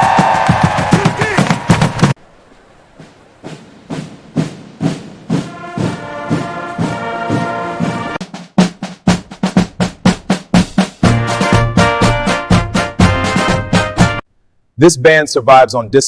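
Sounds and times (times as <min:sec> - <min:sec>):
drum strikes: 0:00.0 - 0:02.2, 0:03.0 - 0:14.2
brass band playing: 0:04.5 - 0:08.4, 0:11.0 - 0:14.2
held brass chord: 0:05.3 - 0:08.2, 0:11.0 - 0:14.2.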